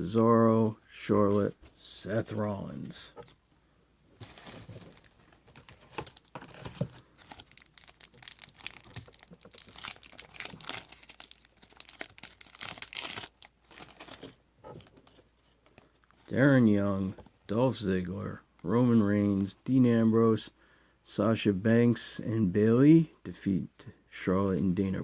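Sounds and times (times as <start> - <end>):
plastic wrapper crinkling: 4.2 - 16.2.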